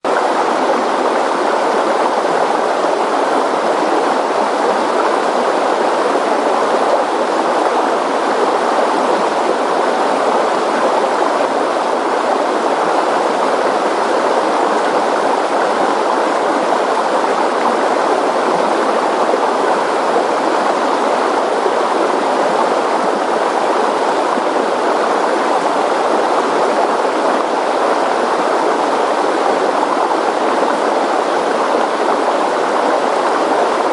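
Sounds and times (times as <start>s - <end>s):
river water rushing: 0.0s - 33.9s.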